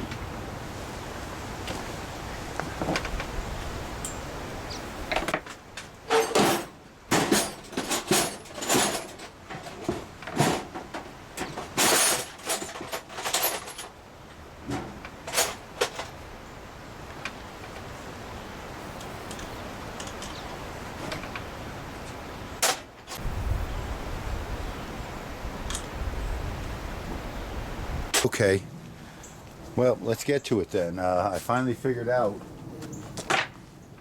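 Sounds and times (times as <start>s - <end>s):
metal tools clinking and rattling: 5.1s - 14.0s, 14.7s - 16.2s, 22.6s - 23.2s.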